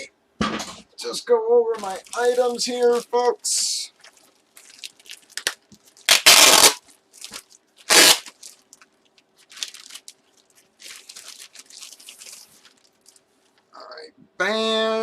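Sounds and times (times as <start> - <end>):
plastic packaging crinkling: 1.7 - 13.7.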